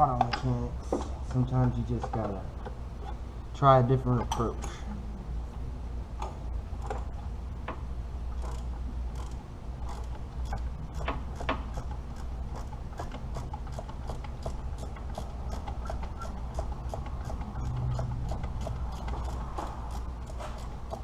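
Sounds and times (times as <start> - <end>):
steady low hum: 0.0 - 21.0
ratchet wrench clicking: 8.4 - 21.0.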